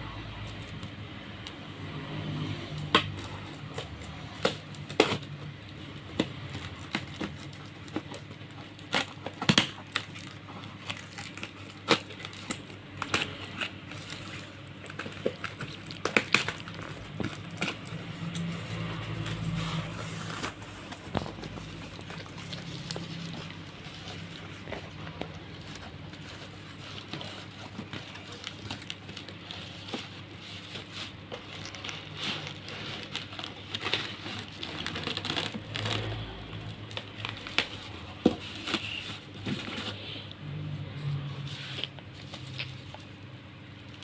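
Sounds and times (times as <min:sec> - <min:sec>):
plastic and cardboard packaging crinkling: 0:02.4 - 0:44.0.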